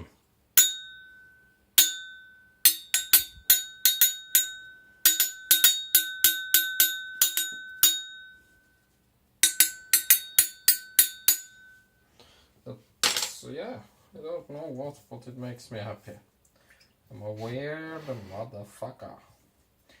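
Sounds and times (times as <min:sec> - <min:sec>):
ringing cleaver blade taps: 0:00.6 - 0:08.4, 0:09.4 - 0:11.8.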